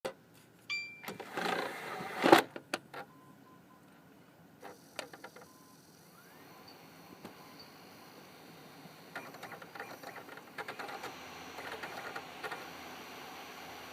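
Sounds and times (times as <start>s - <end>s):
short beep: 0.7s - 1.1s
disc drive whirring and grinding: 4.6s - 13.9s.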